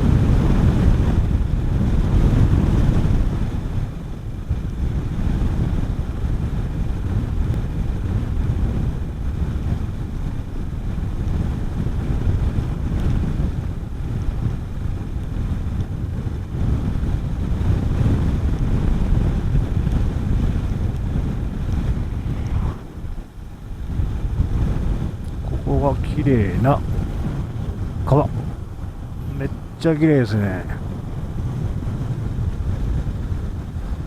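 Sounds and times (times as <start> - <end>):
wind buffeting microphone: 0.0 - 34.0
motorcycle engine rumble: 16.2 - 34.0.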